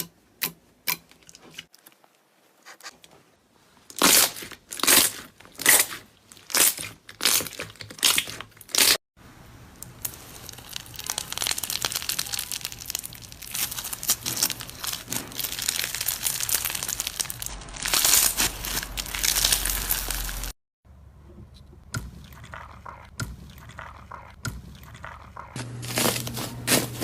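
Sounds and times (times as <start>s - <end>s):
slime squeezed by hand crackling: 10.0s - 20.5s.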